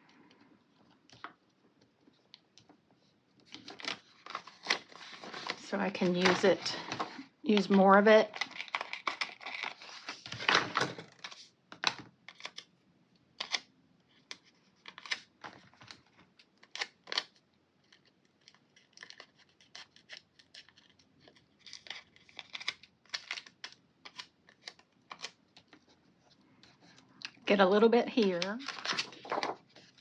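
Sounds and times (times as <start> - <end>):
paper stickers crinkling: 3.4 - 12.7, 16.6 - 25.8, 28.1 - 30.0.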